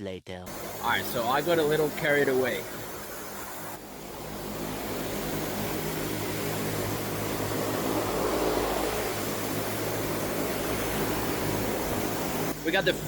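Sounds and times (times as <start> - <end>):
machine humming: 0.5 - 13.0.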